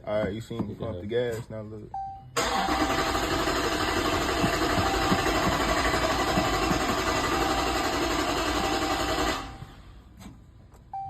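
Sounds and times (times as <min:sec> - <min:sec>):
car engine starting and running: 0:02.4 - 0:10.0
low engine knocks: 0:03.8 - 0:07.2.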